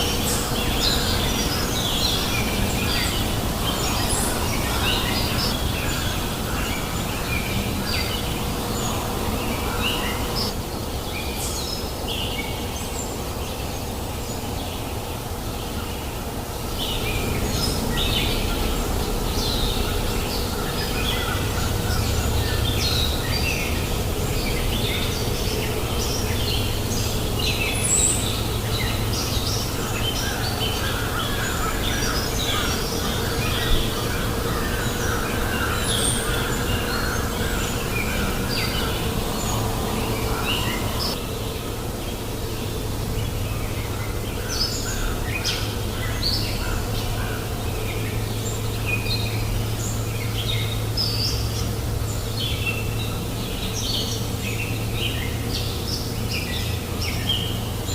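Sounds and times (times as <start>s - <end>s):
river water rushing: 0.0s - 46.2s
small birds chirping: 0.0s - 57.9s.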